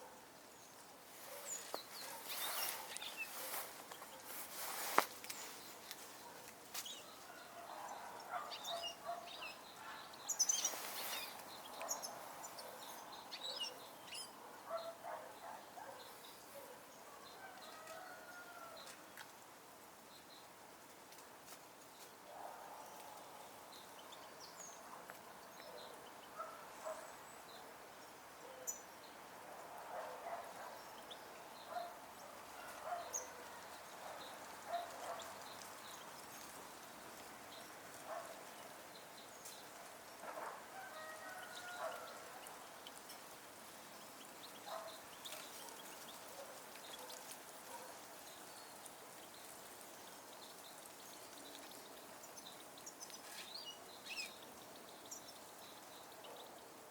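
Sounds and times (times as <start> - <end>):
faint steady background noise: 0.0 - 56.9
bird calls and chirps: 0.6 - 5.9, 6.8 - 18.5, 41.2 - 56.7.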